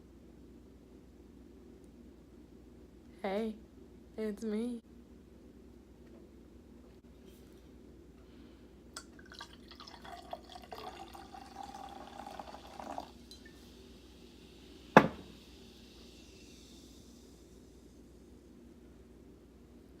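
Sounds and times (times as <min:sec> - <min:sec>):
wine pouring into a glass: 0:09.0 - 0:17.5
sharp knock: 0:15.0 - 0:15.2.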